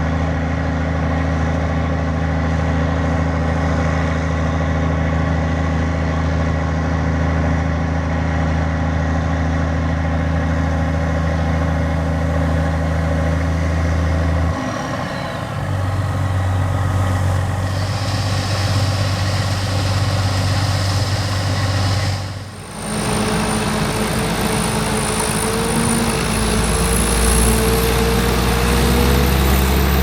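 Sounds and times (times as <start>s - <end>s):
diesel engines of heavy machinery: 0.0s - 30.0s
high whine: 10.2s - 30.0s.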